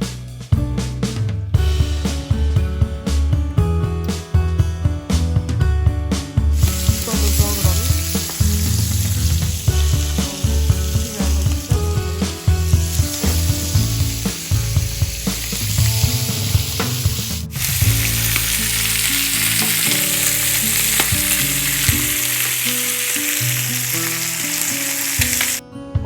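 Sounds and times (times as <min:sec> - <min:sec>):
meat sizzling on a grill: 0:06.6 - 0:25.6.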